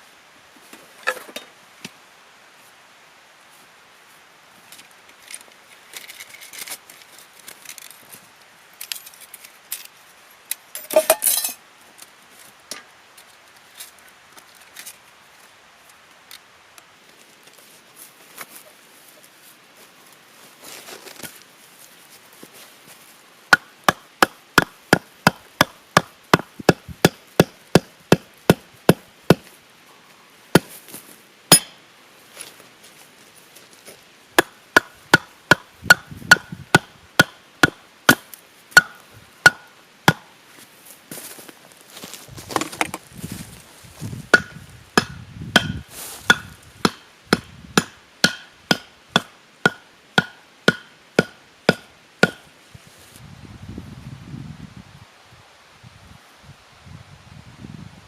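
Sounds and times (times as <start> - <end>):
hand tool striking wood: 23.5 - 29.5, 31.5 - 31.8, 34.4 - 40.3, 44.3 - 52.5
small knocks and rustles: 40.6 - 44.2.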